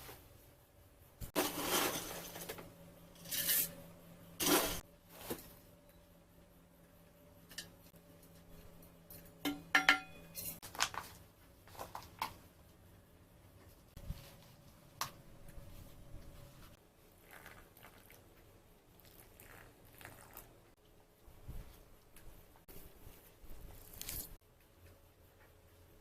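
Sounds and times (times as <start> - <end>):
dishes clinking and knocking: 9.3 - 10.6.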